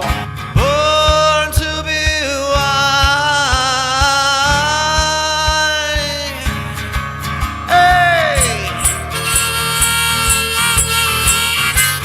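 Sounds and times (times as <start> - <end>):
kick drum beat: 0.6 - 6.6
high lead note with vibrato: 8.0 - 12.0.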